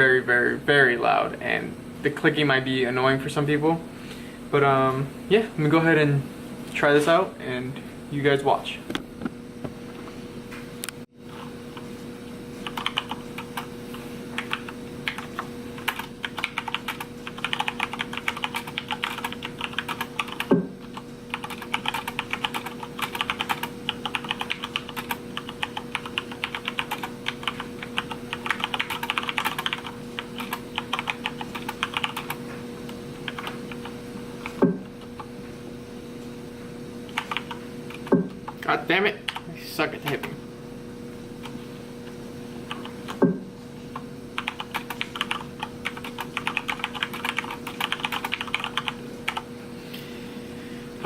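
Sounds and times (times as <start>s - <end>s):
mechanical keyboard typing: 12.6s - 13.7s, 14.4s - 32.4s, 33.2s - 35.3s, 37.1s - 38.1s, 42.7s - 43.2s, 44.4s - 49.4s.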